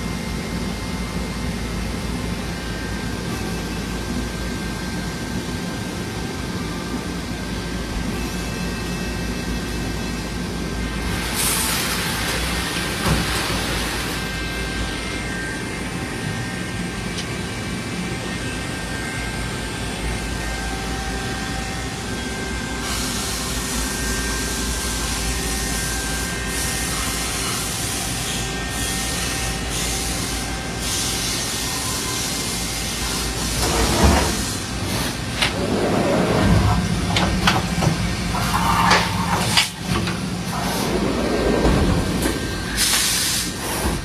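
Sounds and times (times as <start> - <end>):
shop machinery humming: 0.0 - 44.0.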